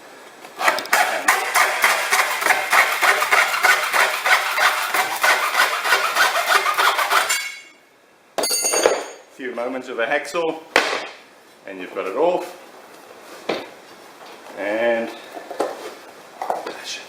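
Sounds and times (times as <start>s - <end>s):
hacksaw sawing through steel: 0.6s - 7.8s.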